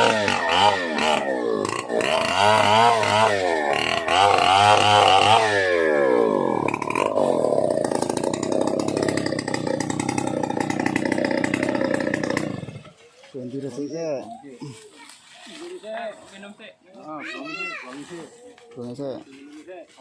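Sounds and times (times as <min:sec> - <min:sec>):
chainsaw engine revving and idling: 0:00.0 - 0:13.1.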